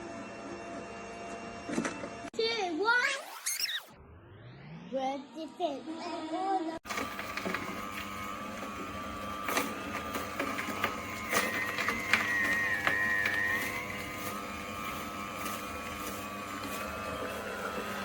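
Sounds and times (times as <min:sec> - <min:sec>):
juicer motor whining: 0:00.0 - 0:02.3, 0:06.8 - 0:18.0.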